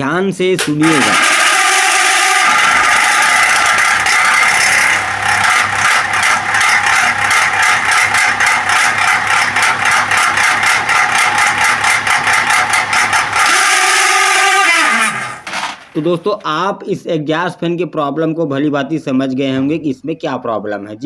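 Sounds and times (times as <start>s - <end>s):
exhaust fan humming: 0.0s - 16.6s
fast regular rattle: 0.8s - 16.0s.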